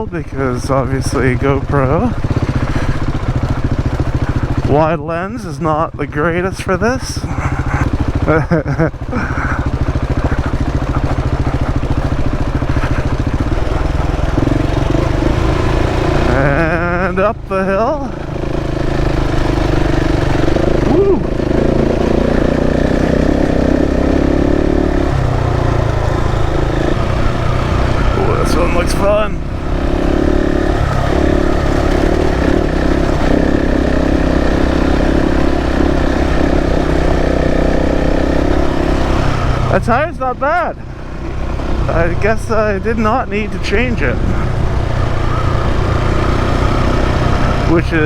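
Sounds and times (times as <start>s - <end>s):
motorcycle engine at low revs: 0.0s - 48.0s.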